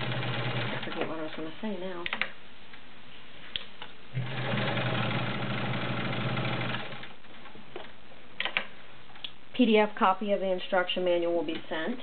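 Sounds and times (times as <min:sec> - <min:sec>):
sewing machine stitching: 0:00.0 - 0:01.4, 0:04.2 - 0:07.1.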